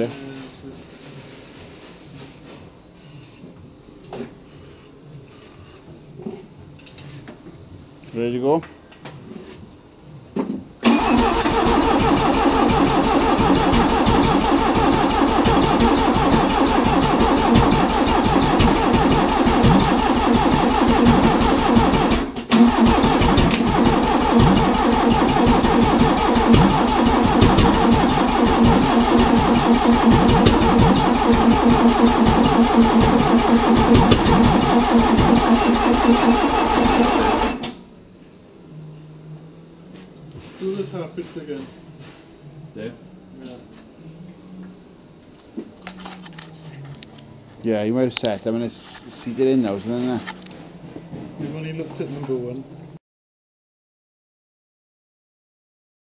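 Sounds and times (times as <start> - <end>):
engine cranking on starter motor: 10.8 - 37.8.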